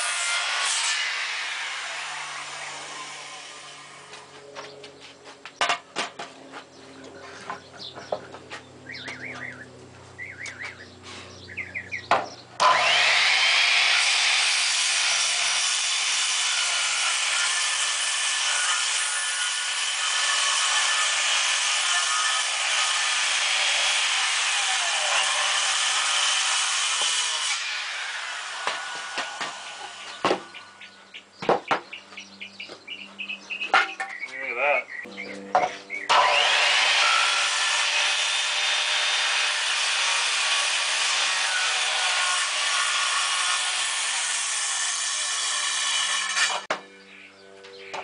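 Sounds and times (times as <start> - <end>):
power saw cutting wood: 0.0 - 4.7, 12.1 - 30.9, 35.0 - 46.8.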